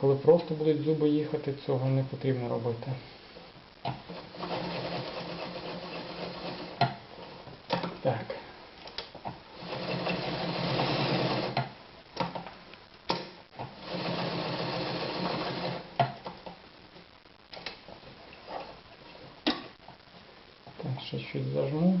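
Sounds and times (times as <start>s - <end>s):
sewing machine stitching: 4.1s - 6.9s, 9.6s - 11.6s, 13.6s - 15.9s.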